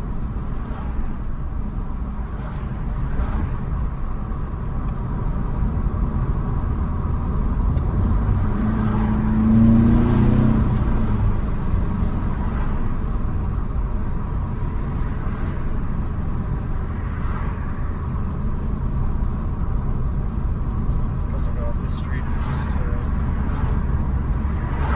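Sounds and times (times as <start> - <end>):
road noise: 0.0 - 24.9
car engine accelerating: 5.9 - 24.9.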